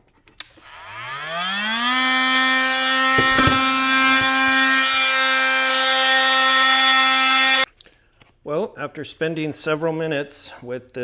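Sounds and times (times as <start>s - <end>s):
oscillating tool sanding ceramic: 0.5s - 7.7s
short knocks: 3.0s - 5.0s.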